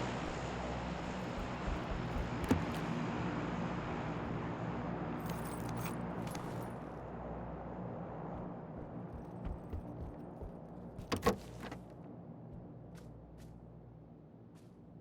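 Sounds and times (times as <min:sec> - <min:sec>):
engine-like drone: 0:00.0 - 0:10.5.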